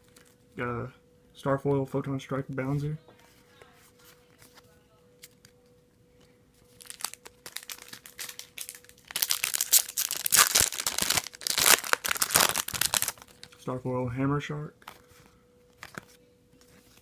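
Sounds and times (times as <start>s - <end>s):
plastic wrapper crinkling and tearing: 6.7s - 13.6s.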